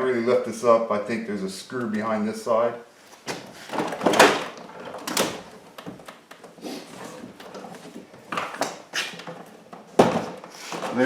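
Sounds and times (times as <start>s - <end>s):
handling noise: 3.1s - 11.0s
plastic scraping and knocking: 3.3s - 11.0s.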